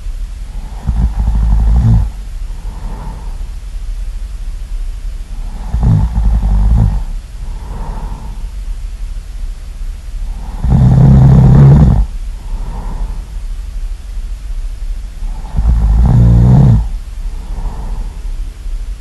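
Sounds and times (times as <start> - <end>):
soft breath: 0.0 - 1.2, 1.8 - 3.8, 5.3 - 8.8, 10.2 - 13.9, 15.2 - 19.0
loud rattling snoring: 0.5 - 3.5, 5.3 - 8.6, 10.2 - 13.4, 15.2 - 18.4.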